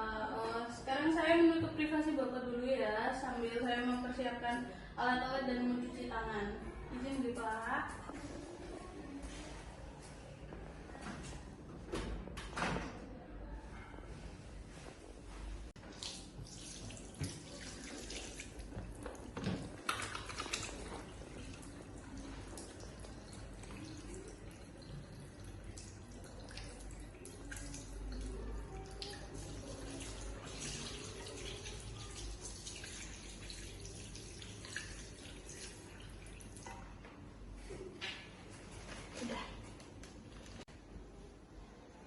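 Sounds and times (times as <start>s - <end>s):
splashing as hands washed: 15.8s - 36.8s
tap water running into sink: 15.8s - 36.9s.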